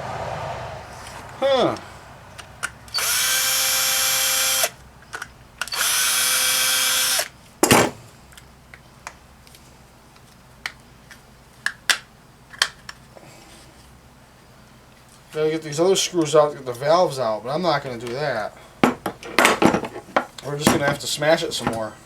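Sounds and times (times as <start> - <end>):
power drill spinning: 2.8 - 4.8, 5.6 - 7.4.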